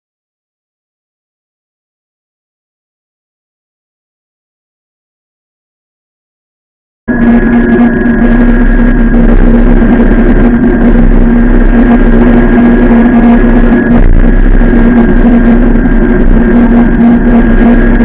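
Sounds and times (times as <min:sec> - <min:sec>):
electric motor whine: 0:07.1 - 0:18.0
wind and road noise: 0:07.6 - 0:18.0.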